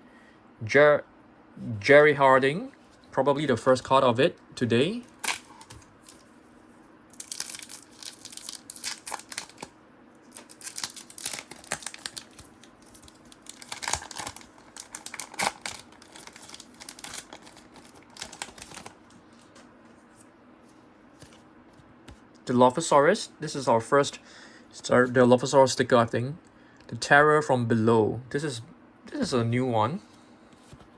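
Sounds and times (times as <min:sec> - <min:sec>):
cards and paper wrapper crinkling: 0:07.1 - 0:09.7, 0:10.3 - 0:19.5.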